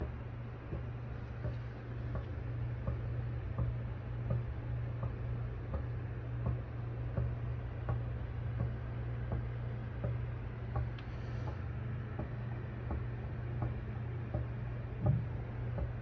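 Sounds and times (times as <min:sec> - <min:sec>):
air conditioner low hum: 0:00.0 - 0:16.0
air conditioner ticking clicks: 0:00.0 - 0:16.0.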